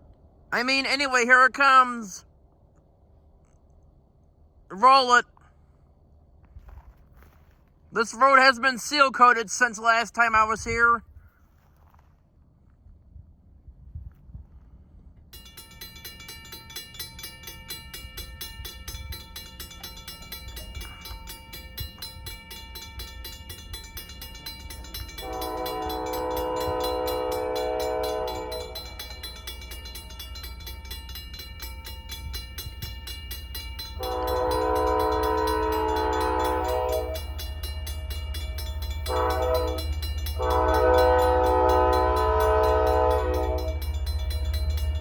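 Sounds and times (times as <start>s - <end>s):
locomotive rumble: 14.4s - 45.0s
locomotive air horn blasts: 25.1s - 29.0s, 34.0s - 37.4s, 39.0s - 44.0s.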